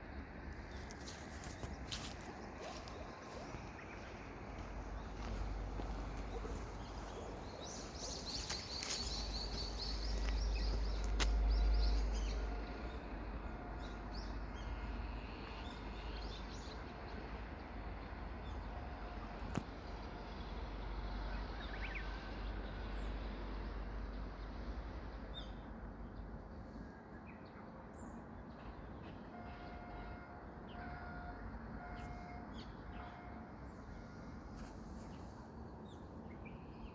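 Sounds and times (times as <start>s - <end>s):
birds chirping: 0.6s - 13.0s.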